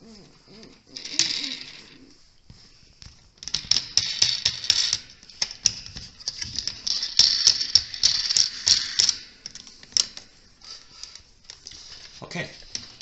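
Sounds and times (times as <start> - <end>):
metallic clicking and rattling: 3.4 - 13.0.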